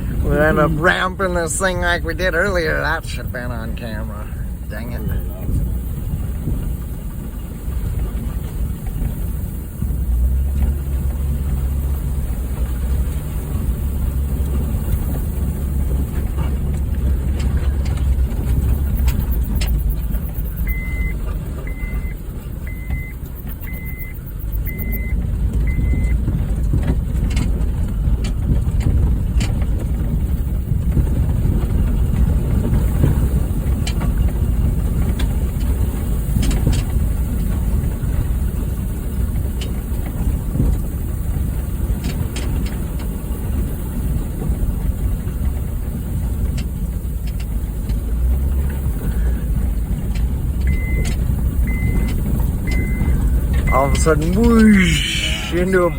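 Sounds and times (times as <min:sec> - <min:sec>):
car engine at low speed: 0:00.0 - 0:55.9
car rattling over rough trail: 0:00.0 - 0:55.9
short high electronic beep: 0:22.7 - 0:25.1, 0:53.7 - 0:55.9.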